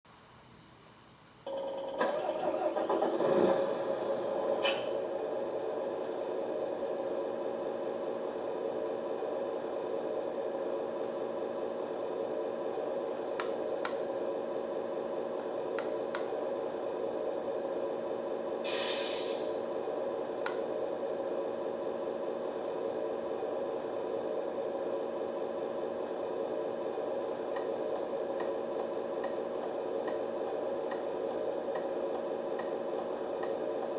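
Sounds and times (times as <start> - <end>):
short hiss: 18.6 - 19.6.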